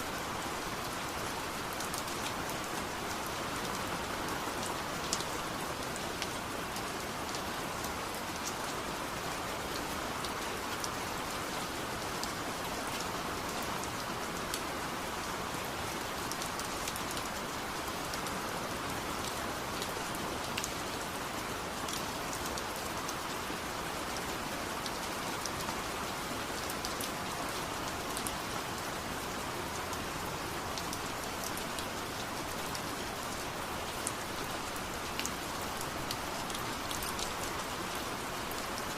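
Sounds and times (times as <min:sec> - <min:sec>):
steady rain hiss: 0:00.0 - 0:38.9
raindrops ticking on hard surfaces: 0:16.0 - 0:38.9.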